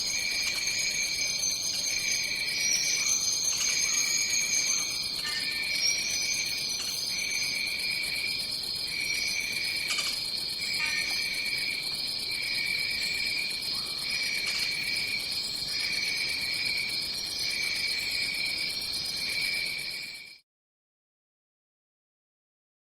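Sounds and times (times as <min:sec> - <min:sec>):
crickets trilling: 0:00.0 - 0:20.4
lower cricket trill: 0:00.0 - 0:20.4.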